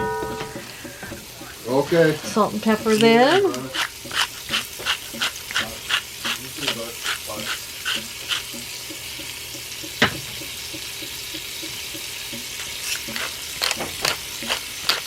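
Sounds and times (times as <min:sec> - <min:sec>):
sharp knock: 0:00.0 - 0:00.7
onions sizzling in butter: 0:00.2 - 0:15.0.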